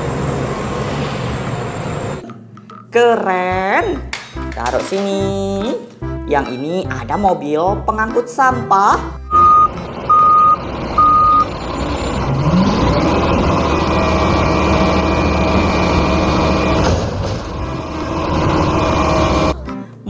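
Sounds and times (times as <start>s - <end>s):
reversing beeps: 9.3s - 12.5s
truck engine running: 9.3s - 19.6s.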